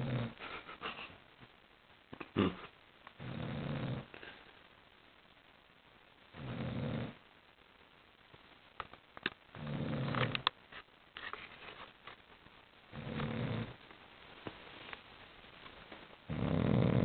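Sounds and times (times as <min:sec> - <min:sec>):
dog snoring: 0:00.0 - 0:00.4, 0:03.2 - 0:04.2, 0:06.3 - 0:07.2, 0:09.5 - 0:10.4, 0:12.9 - 0:13.8, 0:16.3 - 0:17.0.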